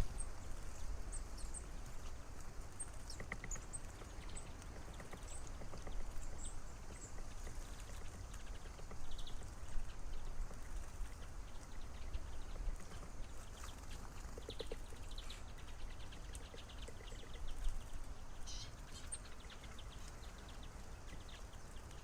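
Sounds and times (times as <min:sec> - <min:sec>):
birds calling with high notes: 0:11.0 - 0:22.0.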